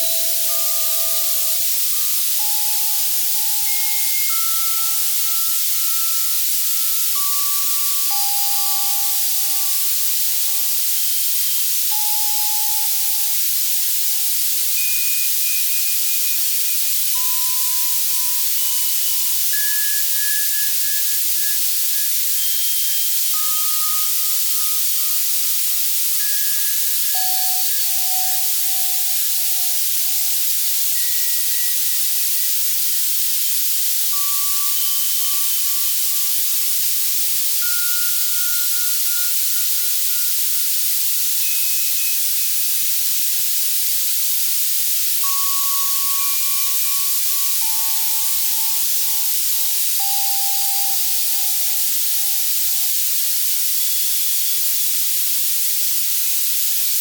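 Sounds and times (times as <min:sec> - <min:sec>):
soft synthesized bell tones: 0:00.0 - 0:10.1, 0:45.2 - 0:52.8
white noise hiss: 0:00.0 - 0:57.0.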